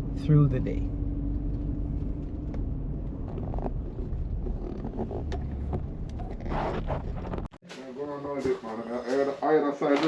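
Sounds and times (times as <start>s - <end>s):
vehicle rumble: 0.0s - 7.6s.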